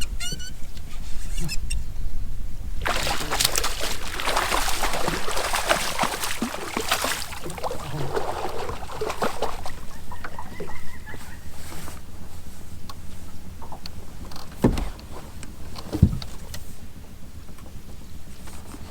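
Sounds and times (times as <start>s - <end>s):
steady low hum: 0.0s - 18.3s
water splashing in vegetation: 2.8s - 10.7s.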